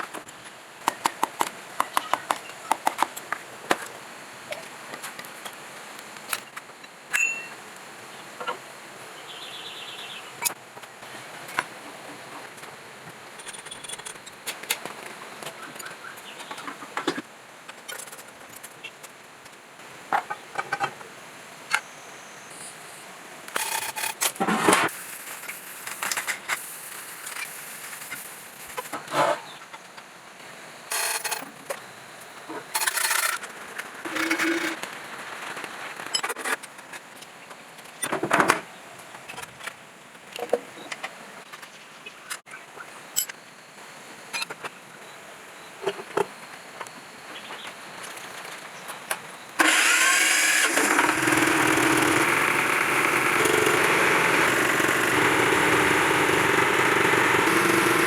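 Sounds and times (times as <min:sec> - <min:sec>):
louder clattering bursts: 0:49.6 - 0:58.0.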